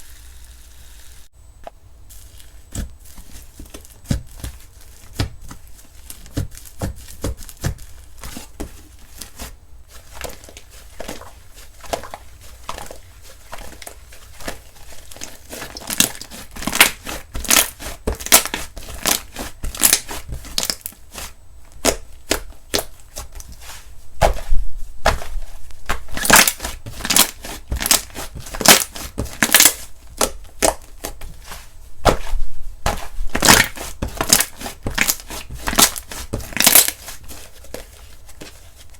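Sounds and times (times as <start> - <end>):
slime squished by hand: 9.2 - 37.9.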